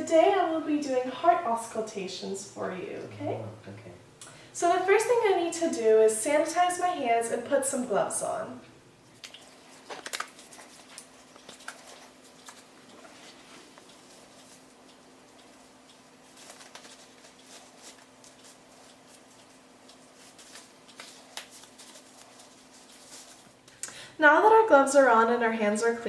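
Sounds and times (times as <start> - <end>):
faint steady hum: 0.0 - 26.0
hands rubbing sanitizer: 9.2 - 23.6.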